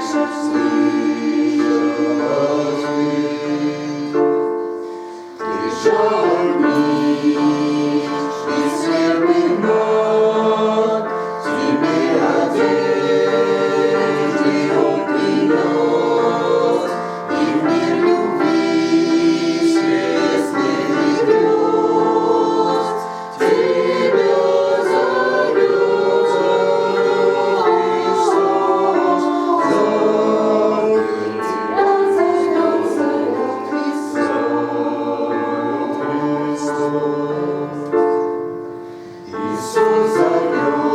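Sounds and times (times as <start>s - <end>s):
choir singing a hymn: 0.0s - 40.9s.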